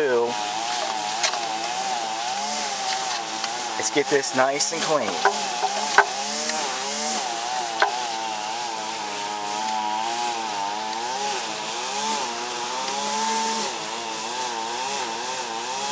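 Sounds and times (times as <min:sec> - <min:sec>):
small motor humming: 0:00.0 - 0:15.9.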